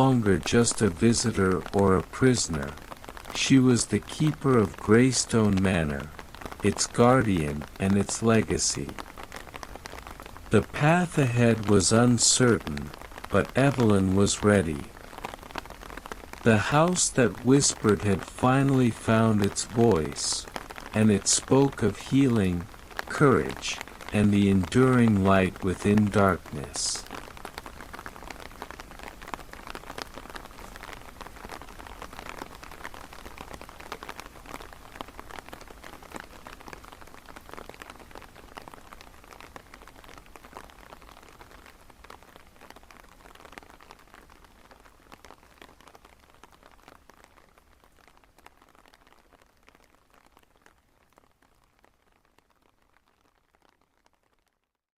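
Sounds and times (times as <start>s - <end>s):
rain falling: 0.0s - 54.9s.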